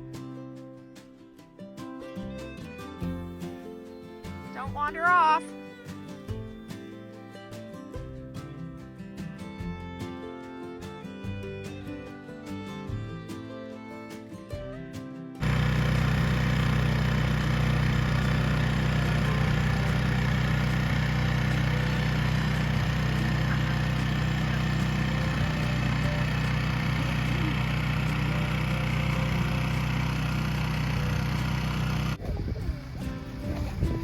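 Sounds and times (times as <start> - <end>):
engine idling: 15.4 - 34.0.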